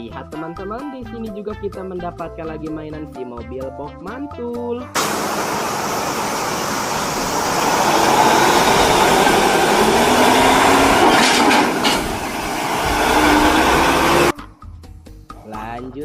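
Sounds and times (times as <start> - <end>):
water spray hissing: 5.0 - 14.3.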